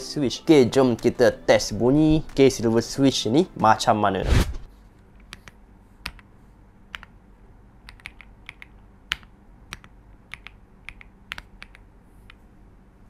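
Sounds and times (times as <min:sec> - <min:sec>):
mechanical keyboard key presses: 0:07.8 - 0:11.8.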